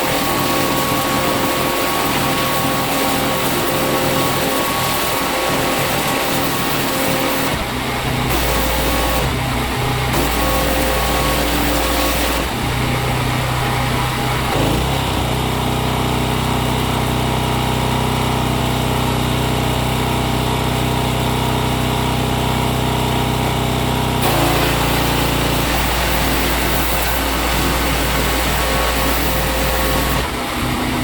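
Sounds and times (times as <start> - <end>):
motor humming: 0.0 - 15.9, 24.2 - 31.0.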